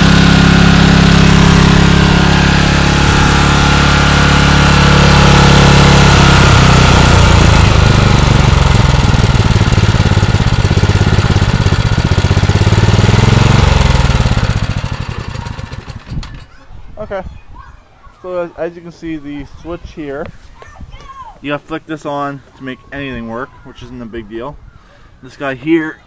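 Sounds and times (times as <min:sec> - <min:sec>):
generator engine running: 0:00.0 - 0:16.4.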